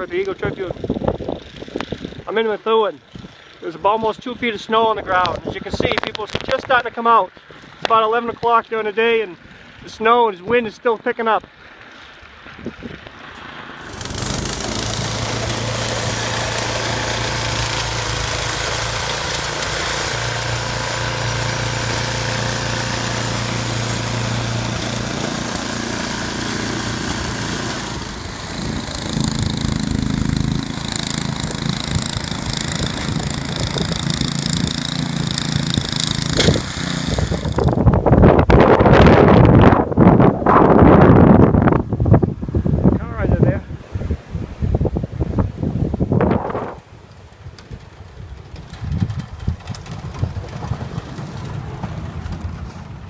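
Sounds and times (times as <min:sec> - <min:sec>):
engine running: 0:11.6 - 0:39.7, 0:46.5 - 0:53.0.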